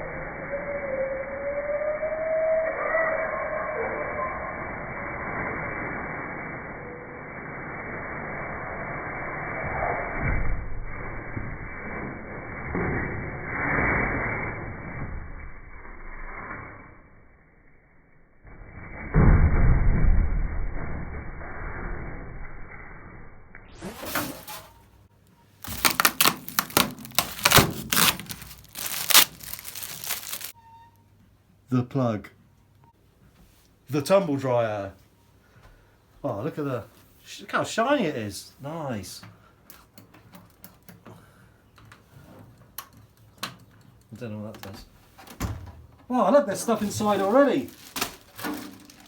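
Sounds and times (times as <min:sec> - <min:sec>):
packaging rustling hiss: 0:25.6 - 0:30.6, 0:46.8 - 0:49.0.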